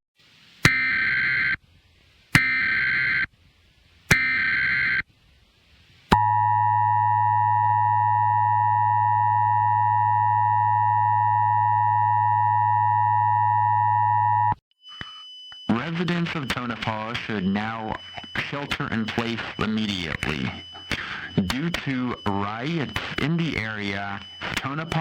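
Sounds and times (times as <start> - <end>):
digital data tones: 14.8 - 25.0.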